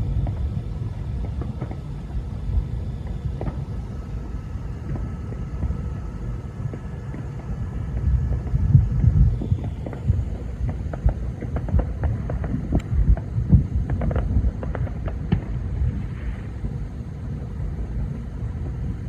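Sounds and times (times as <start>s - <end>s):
low rumble of distant fireworks: 0.0s - 19.0s
firework pops and cracks: 1.2s - 2.2s, 3.0s - 3.7s, 9.3s - 16.8s.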